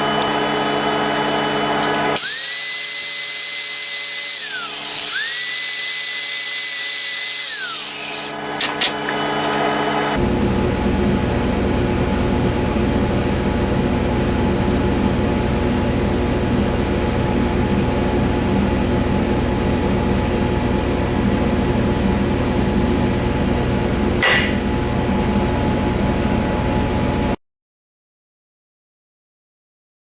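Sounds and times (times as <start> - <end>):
welding arc buzzing: 0.0 - 10.1
sharp metallic clink: 24.2 - 24.7.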